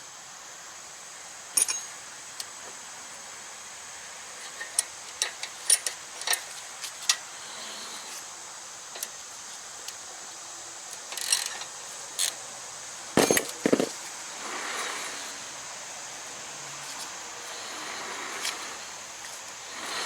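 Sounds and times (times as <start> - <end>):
metallic clicks of hand tools: 1.6 - 2.0.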